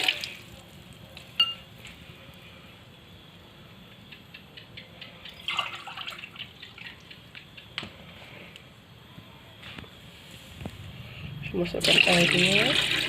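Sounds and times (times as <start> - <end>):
ringing clink of kitchenware: 1.4 - 1.7
water dripping: 5.2 - 7.7.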